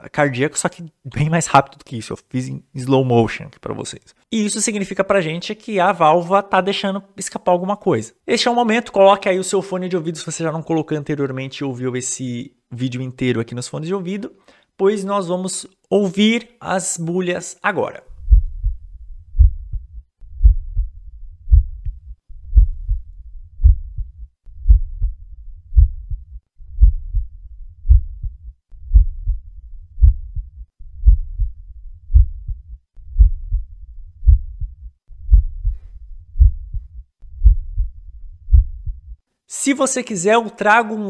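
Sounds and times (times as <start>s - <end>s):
heartbeat through a stethoscope: 18.1s - 39.2s.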